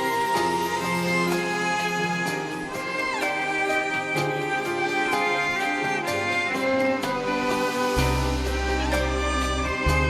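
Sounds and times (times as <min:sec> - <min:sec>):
slow instrumental hymn melody: 0:00.0 - 0:10.0.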